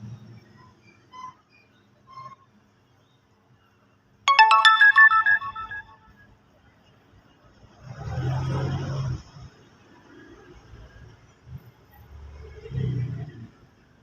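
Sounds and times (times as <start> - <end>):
electronic jingle: 4.3 - 6.0.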